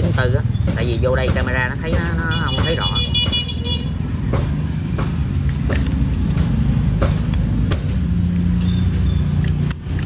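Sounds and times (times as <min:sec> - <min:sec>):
passing road traffic rumble: 0:00.0 - 0:10.0
sharp clicks: 0:09.4 - 0:10.0.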